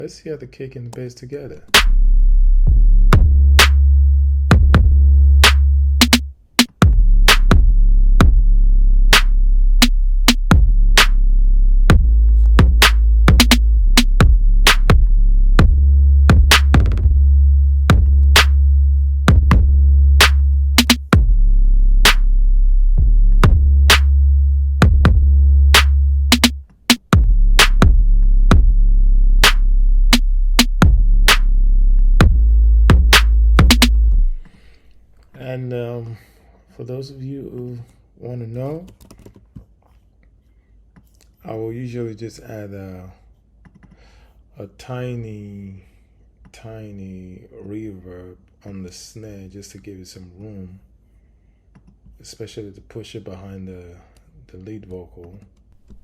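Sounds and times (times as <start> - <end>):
deep synth bass: 1.6 - 34.5
electronic kick drum: 1.7 - 34.4.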